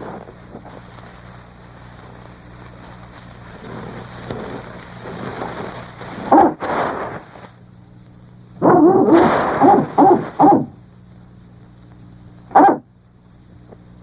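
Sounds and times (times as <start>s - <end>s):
steady hiss: 0.0s - 14.0s
cartoon dog barking: 8.6s - 10.8s, 12.5s - 12.8s.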